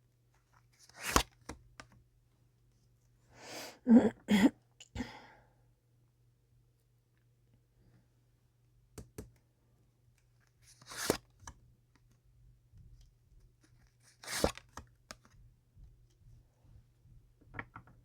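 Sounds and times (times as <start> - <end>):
person coughing: 3.9 - 5.1.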